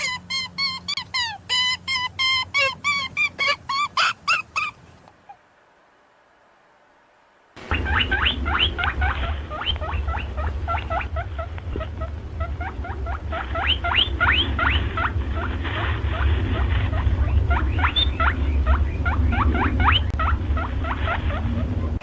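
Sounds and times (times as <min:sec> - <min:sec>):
rabbits squeaking: 0:00.0 - 0:05.4, 0:07.6 - 0:22.0
steady low rumble: 0:07.6 - 0:22.0.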